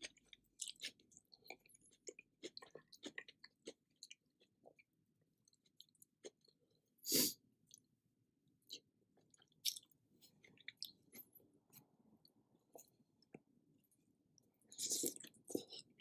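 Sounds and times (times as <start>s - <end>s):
person chewing: 0.0s - 4.8s, 8.7s - 11.1s, 14.8s - 16.0s.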